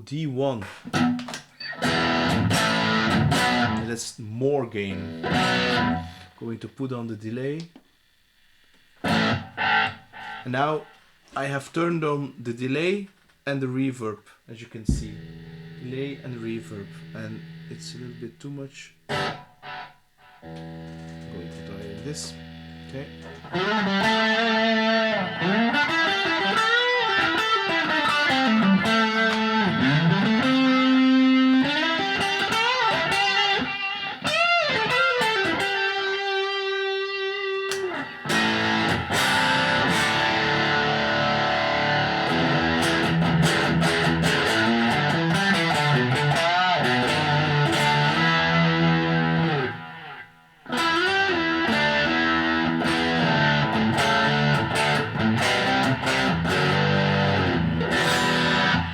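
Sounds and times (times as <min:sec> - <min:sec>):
electric guitar lead lines: 0:00.8 - 0:04.0, 0:04.9 - 0:06.4, 0:08.8 - 0:11.0, 0:14.9 - 0:58.9.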